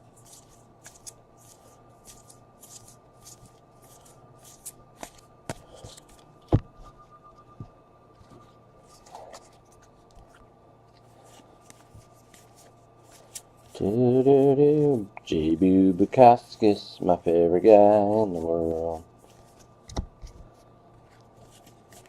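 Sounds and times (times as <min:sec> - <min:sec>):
trading cards swishing: 0:00.0 - 0:06.3, 0:11.0 - 0:22.0.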